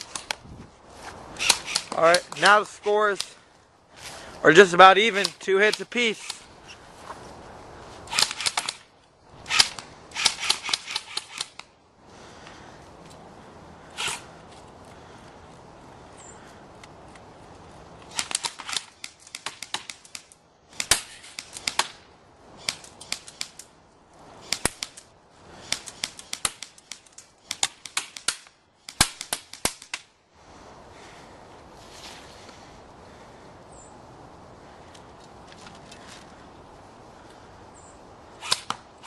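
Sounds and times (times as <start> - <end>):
airsoft rifles firing bursts: 1.4 - 3.3
sharp snap: 18.2 - 22.0, 22.6 - 23.7, 24.4 - 25.0, 25.6 - 30.1, 38.4 - 38.8.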